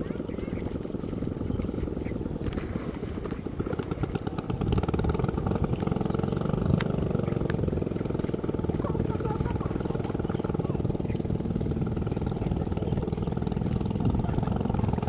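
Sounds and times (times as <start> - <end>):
small engine running: 0.0 - 15.0.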